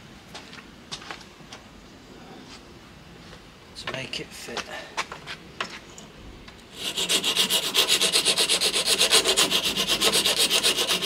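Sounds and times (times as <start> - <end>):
hand file rasping: 6.7 - 11.0.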